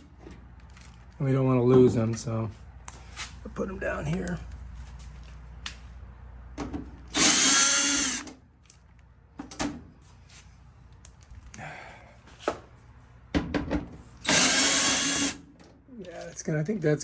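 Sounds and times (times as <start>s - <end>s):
power drill motor whine: 7.1s - 8.3s, 14.2s - 15.4s.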